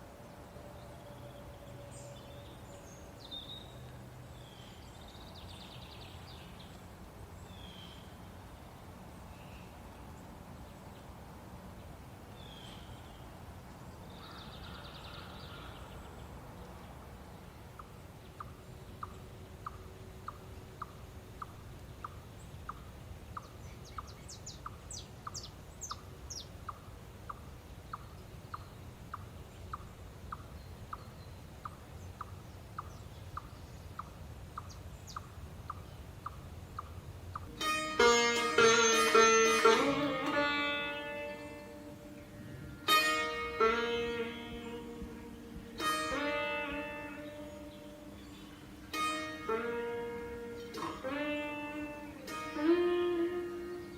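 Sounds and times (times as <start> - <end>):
low background hum: 0.0 - 53.9
regular ticking call: 17.7 - 40.1.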